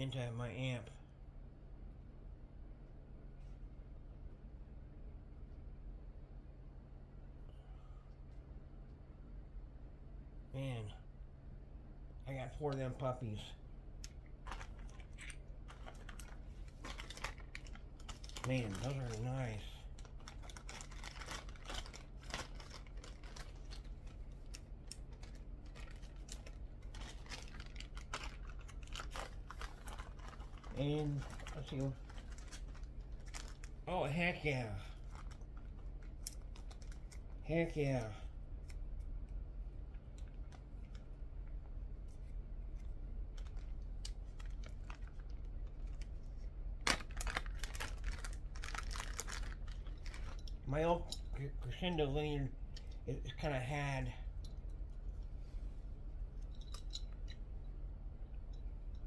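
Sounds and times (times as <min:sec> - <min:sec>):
steady low hum: 0:00.0 - 0:59.0
packaging rustling: 0:14.5 - 0:33.9, 0:34.9 - 0:37.3, 0:46.9 - 0:50.6
plastic and metal parts clicking: 0:20.0 - 0:33.7.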